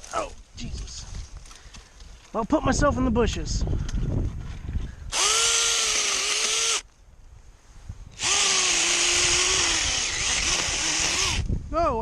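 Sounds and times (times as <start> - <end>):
electric chainsaw whining: 5.1 - 6.8, 8.2 - 11.5.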